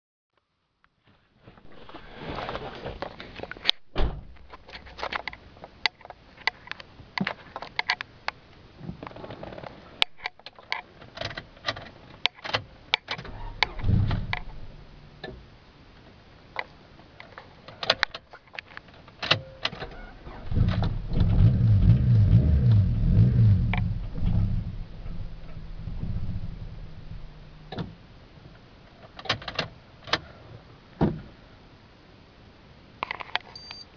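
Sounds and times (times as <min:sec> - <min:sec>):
clicks and knocks: 0:10.0 - 0:15.4, 0:17.7 - 0:28.0
starter cranking engine: 0:20.4 - 0:27.8.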